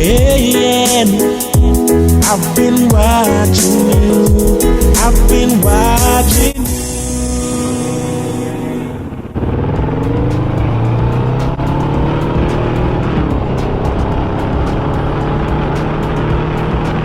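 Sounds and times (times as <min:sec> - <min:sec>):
music: 0:00.0 - 0:17.0
motorcycle engine revving: 0:07.5 - 0:17.0.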